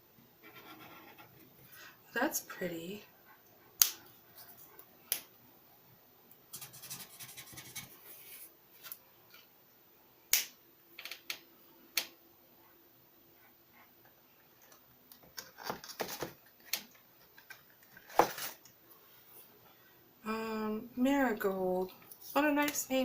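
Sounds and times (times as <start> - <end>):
marker scratching on paper: 0.4 - 1.3, 6.6 - 8.4.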